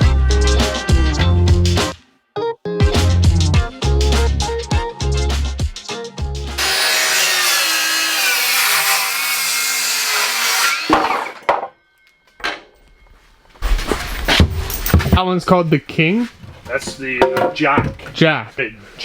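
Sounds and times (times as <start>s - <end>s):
background music with a beat: 0.0s - 2.1s, 2.7s - 6.6s
power saw cutting wood: 6.6s - 11.4s
knocks: 17.2s - 18.2s.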